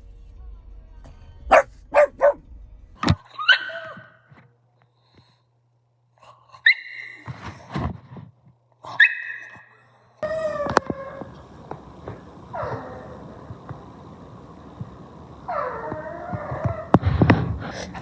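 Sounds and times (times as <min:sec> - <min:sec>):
dog barking: 0:01.5 - 0:02.4
dog yipping and whining: 0:01.5 - 0:02.4, 0:03.3 - 0:04.0, 0:06.6 - 0:07.2, 0:08.9 - 0:11.3, 0:15.5 - 0:17.0.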